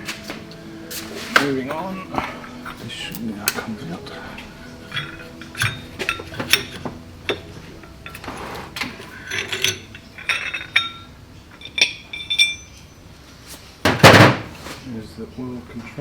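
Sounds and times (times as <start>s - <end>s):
metal parts clicking and clinking: 2.5s - 13.1s.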